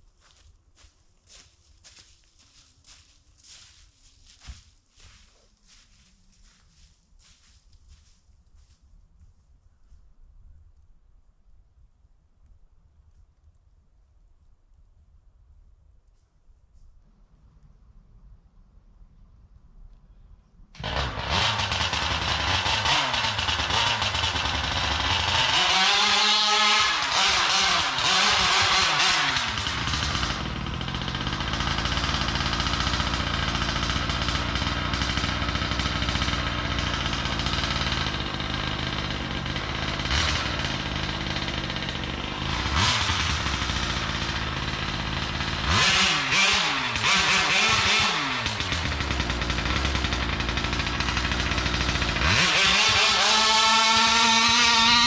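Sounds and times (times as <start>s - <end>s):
rc car engine revving: 20.8s - 55.0s.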